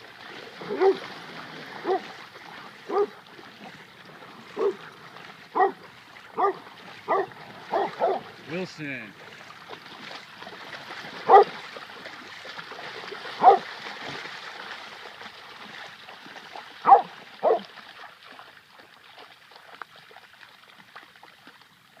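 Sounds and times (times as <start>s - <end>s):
dog barking: 0.7s - 1.0s, 1.8s - 2.1s, 2.9s - 3.2s, 4.6s - 4.8s, 5.5s - 5.8s, 6.4s - 8.3s, 11.3s - 11.5s, 13.4s - 13.7s, 16.8s - 17.6s.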